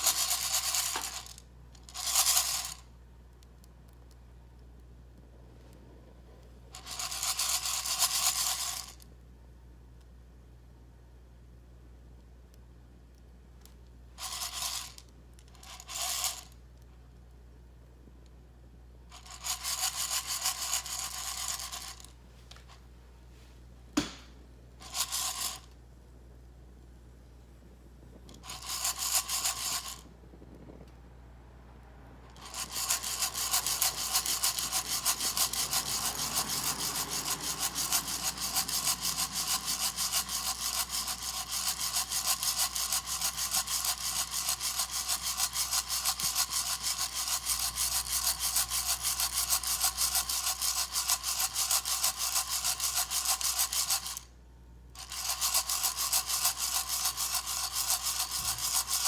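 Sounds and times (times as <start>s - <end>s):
coffee beans rattling in roaster: 0.0s - 2.8s, 6.7s - 9.0s, 19.1s - 22.1s, 24.8s - 25.7s, 28.0s - 30.1s, 32.3s - 54.2s, 55.0s - 59.0s.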